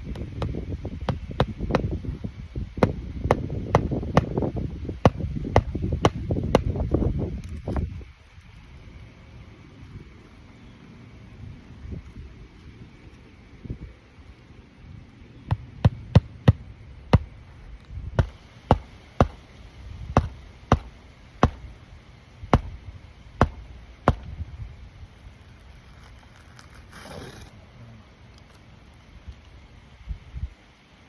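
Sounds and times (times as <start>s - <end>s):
hammer striking roofing nails: 0.0s - 2.1s, 2.8s - 6.8s, 18.2s - 19.5s, 20.2s - 21.7s, 22.5s - 22.8s, 23.4s - 24.3s
brief rustle: 25.2s - 27.6s.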